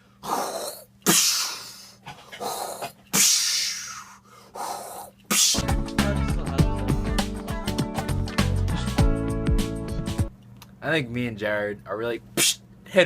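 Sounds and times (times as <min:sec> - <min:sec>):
man making hissing mouth sounds: 0:00.2 - 0:06.6, 0:08.3 - 0:09.0, 0:12.4 - 0:12.6
music: 0:05.6 - 0:10.4.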